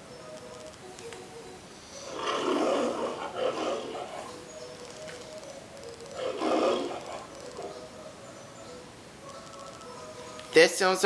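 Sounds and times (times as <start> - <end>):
lion roaring: 2.0 - 4.5, 6.2 - 7.8.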